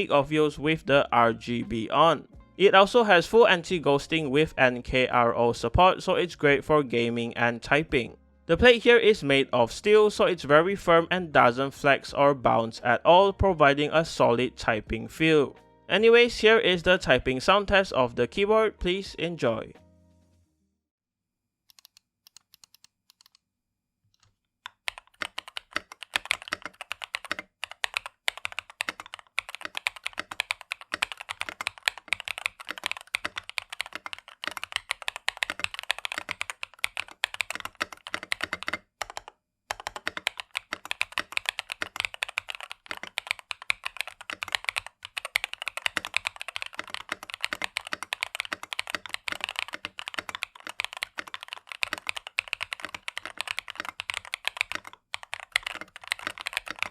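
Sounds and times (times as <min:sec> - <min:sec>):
mechanical keyboard typing: 0:21.7 - 0:23.4, 0:24.2 - 0:56.9.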